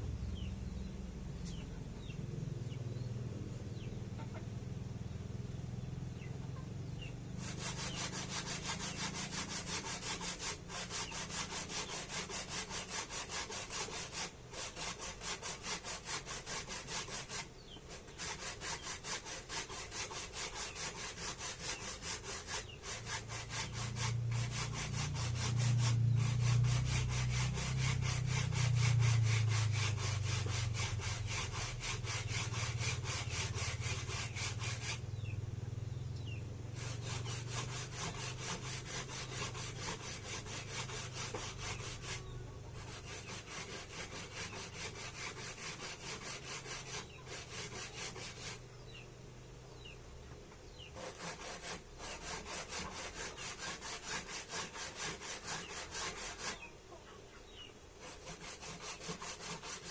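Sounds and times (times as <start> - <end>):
low hum: 0.0 - 7.5
food rasping on a grater: 7.4 - 35.0, 36.8 - 48.6, 51.0 - 56.7, 58.0 - 59.9.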